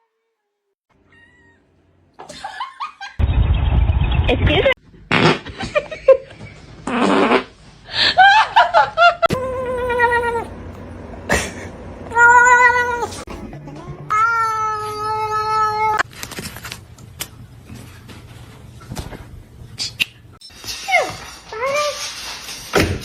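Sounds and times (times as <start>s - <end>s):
cat meowing and yowling: 14.1s - 16.0s.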